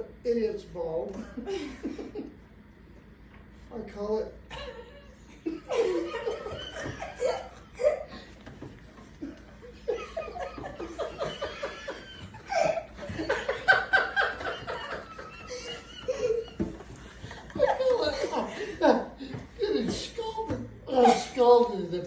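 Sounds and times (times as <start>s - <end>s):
person laughing and wheezing: 4.5s - 8.5s, 9.2s - 19.9s.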